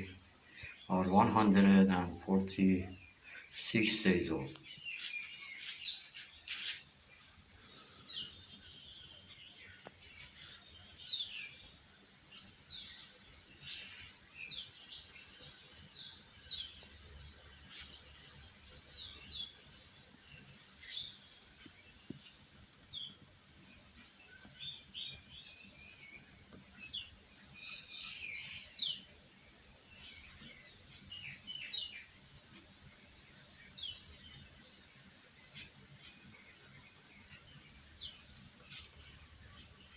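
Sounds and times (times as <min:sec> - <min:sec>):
birds chirping: 0:00.0 - 0:18.0
high-pitched insect drone: 0:00.0 - 0:39.9.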